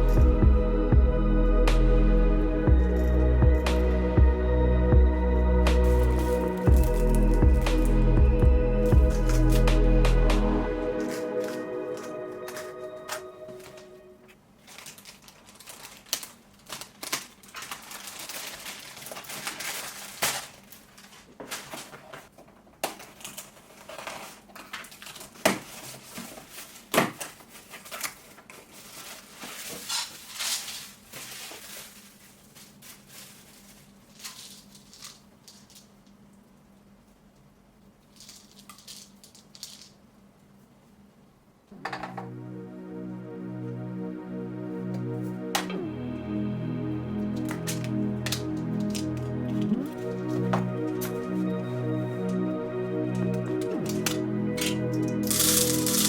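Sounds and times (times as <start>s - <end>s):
packaging rustling and crinkling: 5.8s - 7.9s, 14.6s - 35.9s, 53.4s - 56.0s.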